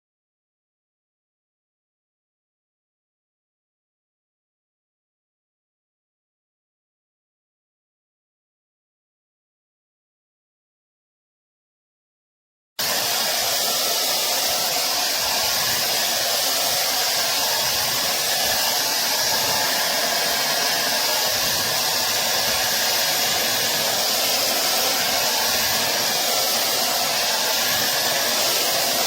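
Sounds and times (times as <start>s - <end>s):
hair dryer running: 12.8s - 29.0s.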